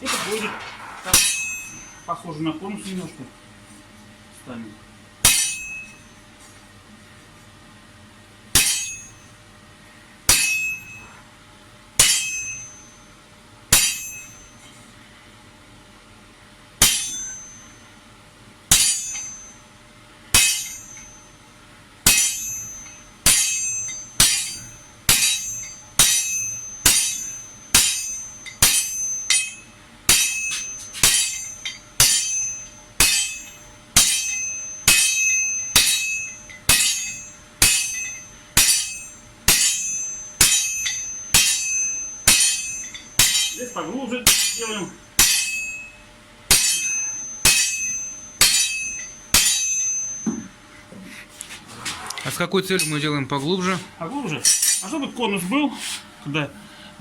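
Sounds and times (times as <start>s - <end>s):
hammer ringing on anvil: 1.1s - 2.2s, 5.2s - 6.2s, 8.6s - 9.3s, 10.3s - 11.2s, 12.0s - 13.1s, 13.7s - 14.6s, 16.8s - 17.9s, 18.7s - 19.7s, 20.3s - 21.4s, 22.0s - 50.6s, 54.4s - 55.0s.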